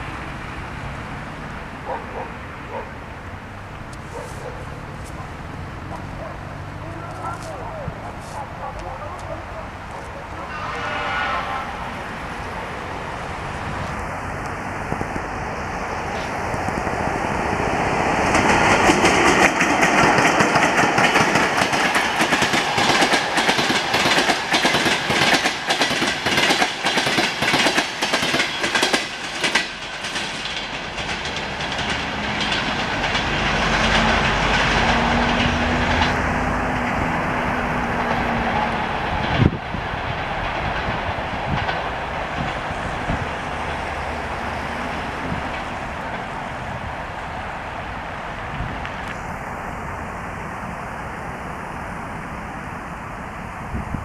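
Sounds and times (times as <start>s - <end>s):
passenger train rolling past: 0.0s - 54.0s
wheel clacks over rail joints: 18.2s - 39.6s.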